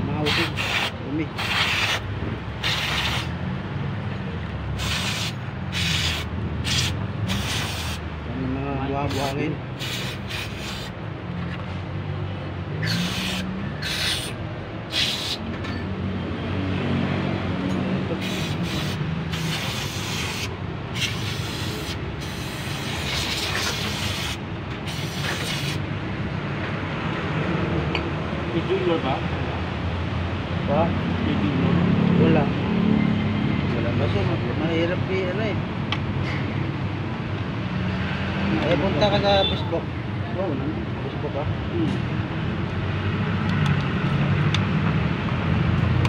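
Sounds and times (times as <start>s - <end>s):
short hissing sprays: 0.3s - 3.3s, 4.8s - 8.0s, 9.1s - 11.0s, 12.8s - 15.4s, 18.2s - 25.8s.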